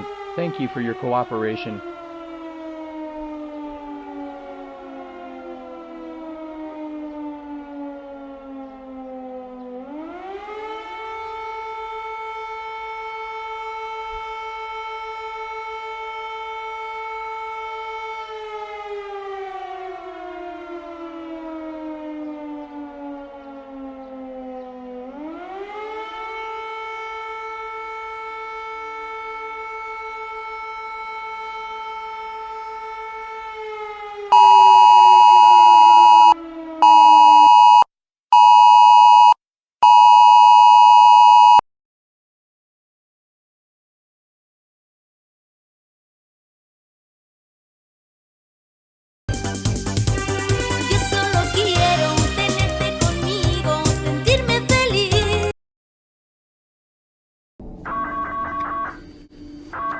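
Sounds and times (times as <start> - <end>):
civil defense siren wailing: 0.0 - 37.8, 59.7 - 59.9
two-tone alert attention signal: 34.4 - 37.8.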